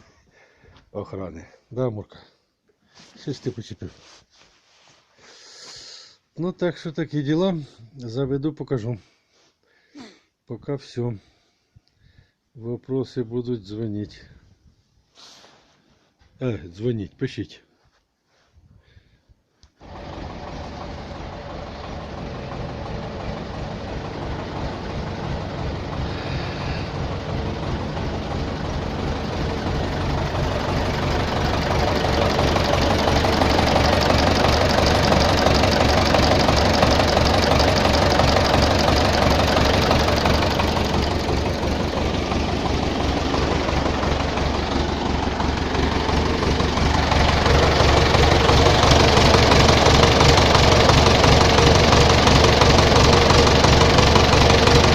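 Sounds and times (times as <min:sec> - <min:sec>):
engine knock: 0:19.8 - 0:54.9
tractor diesel engine idling: 0:19.8 - 0:54.9.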